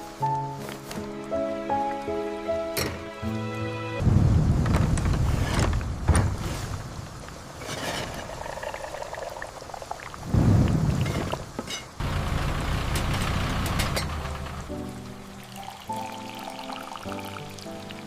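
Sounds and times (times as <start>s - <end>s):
deep rumbling: 4.0s - 15.2s
steady rain: 4.0s - 18.0s.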